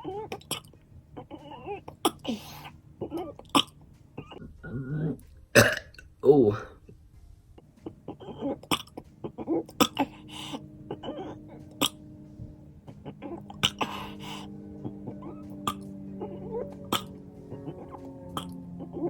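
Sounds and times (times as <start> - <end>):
background music tones: 3.7 - 19.0
man burping: 5.5 - 6.9, 8.1 - 10.3, 13.4 - 14.2.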